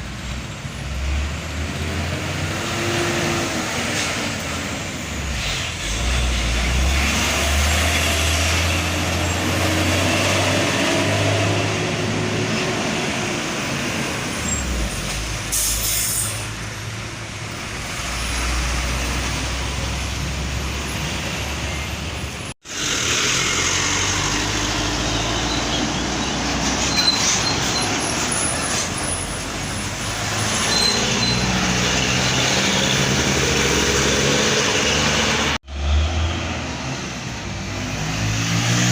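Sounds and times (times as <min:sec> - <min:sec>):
diesel truck engine drone: 0:00.0 - 0:38.9
passing traffic: 0:00.0 - 0:38.9
air brake hiss: 0:15.4 - 0:16.5.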